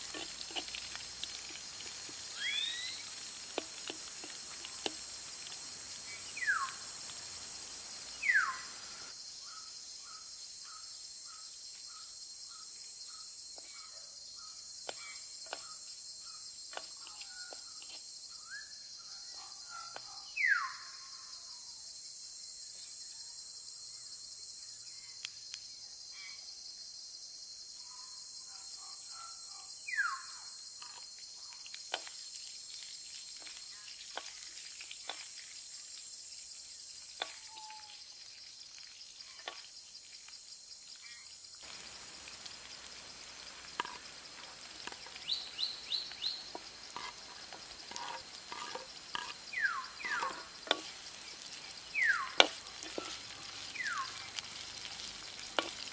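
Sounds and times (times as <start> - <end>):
food sizzling in a pan: 0.0 - 9.2, 30.0 - 55.9
falling bird call: 2.3 - 3.1.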